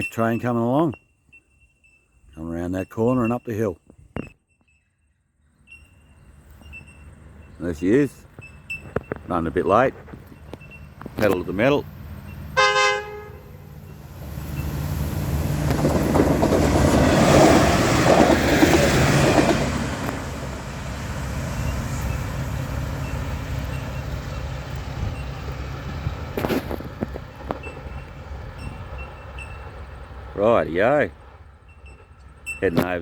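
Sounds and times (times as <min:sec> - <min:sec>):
train engine rumble and wheel noise: 0:05.7 - 0:33.0
train horn blast: 0:12.6 - 0:13.8.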